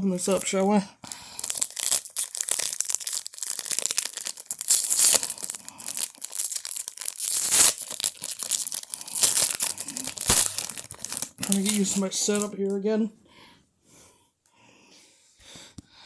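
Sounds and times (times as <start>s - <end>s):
wrapper crinkling: 0.1s - 12.5s
wrapper ripping: 0.2s - 0.7s, 1.4s - 12.5s.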